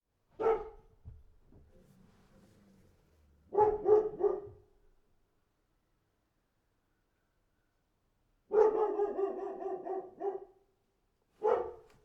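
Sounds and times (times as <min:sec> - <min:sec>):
dog barking: 0:00.4 - 0:00.9, 0:03.5 - 0:04.6, 0:08.5 - 0:10.6, 0:11.4 - 0:12.0.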